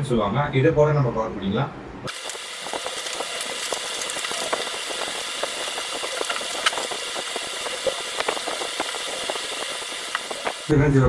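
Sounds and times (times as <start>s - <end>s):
electric blower whirring hiss: 2.1s - 10.7s
insulating sheet clicks and crackles: 2.1s - 10.7s.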